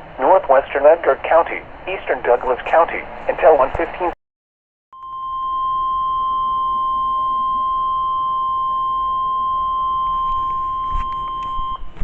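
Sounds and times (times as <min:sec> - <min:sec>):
faint radio static: 0:00.2 - 0:04.2
steady alarm beep: 0:05.0 - 0:11.9.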